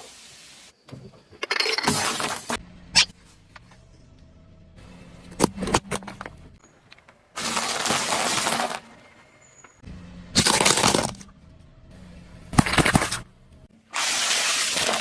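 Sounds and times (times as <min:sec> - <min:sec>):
tyre crushing cracking objects: 0:07.4 - 0:08.9, 0:10.3 - 0:11.3, 0:12.5 - 0:13.3.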